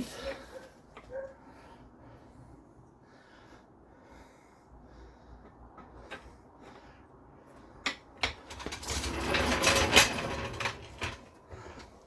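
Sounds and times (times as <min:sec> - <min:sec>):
jack rattling down: 0:08.3 - 0:11.3.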